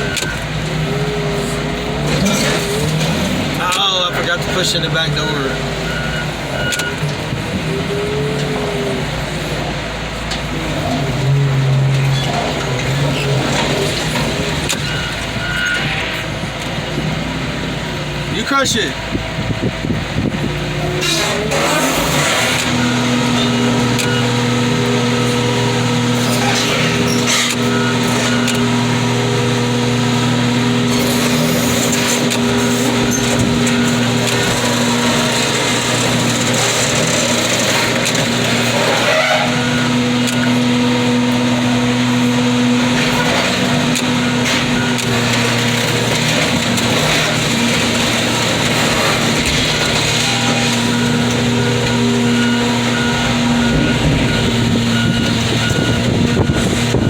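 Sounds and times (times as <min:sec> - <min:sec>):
heavy equipment engine running: 0:00.0 - 0:57.0.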